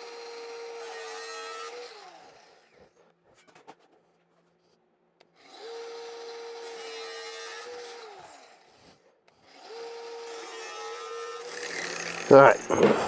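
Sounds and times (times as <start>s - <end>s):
angle grinder cutting steel: 11.5s - 13.0s.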